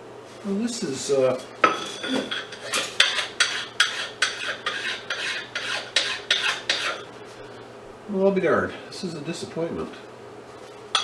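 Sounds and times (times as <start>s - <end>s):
hand file rasping on metal: 2.1s - 7.1s.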